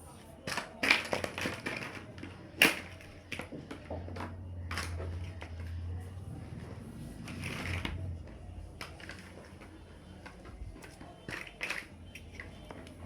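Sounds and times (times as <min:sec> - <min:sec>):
plastic blocks clicking together: 0:00.4 - 0:05.8, 0:08.8 - 0:13.0.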